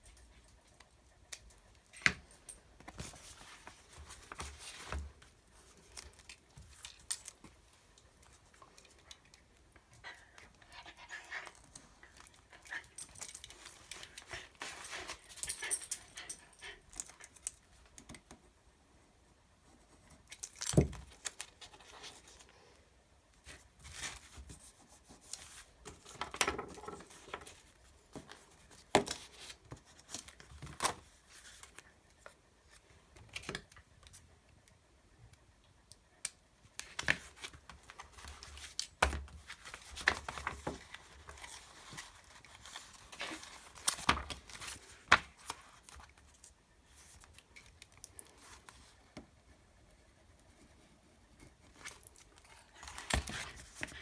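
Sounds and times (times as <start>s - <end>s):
paper rustling and crinkling: 2.8s - 9.0s, 13.4s - 15.6s, 23.4s - 33.6s, 36.8s - 49.0s, 51.6s - 54.0s.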